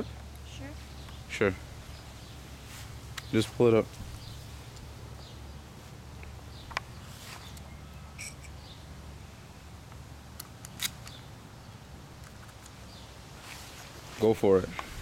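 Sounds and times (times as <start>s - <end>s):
steady low hum: 0.0s - 15.0s
gun clicks: 10.3s - 11.2s.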